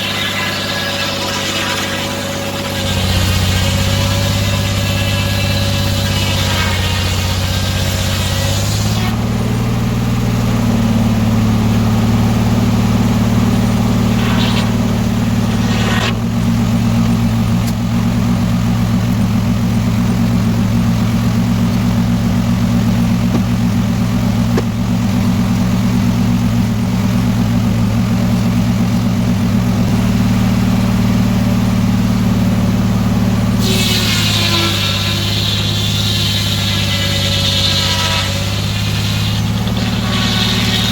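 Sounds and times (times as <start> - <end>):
engine running: 0.0 - 40.9.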